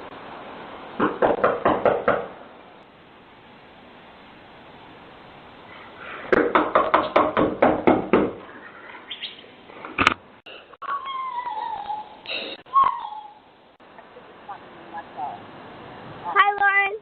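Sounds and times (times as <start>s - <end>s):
rapid knocking on a door: 1.0s - 2.3s, 6.3s - 8.4s
high wavering cry: 10.8s - 13.6s.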